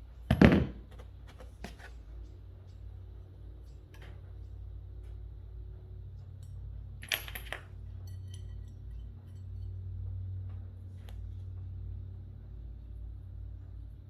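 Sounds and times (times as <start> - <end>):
steady low hum: 0.0 - 14.0
metal pieces clinking: 6.4 - 9.7
metallic ring: 6.4 - 9.9.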